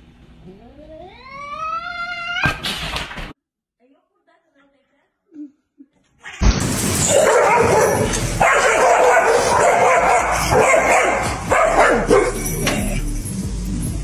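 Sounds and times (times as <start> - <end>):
dog barking and yipping: 7.0 - 12.8.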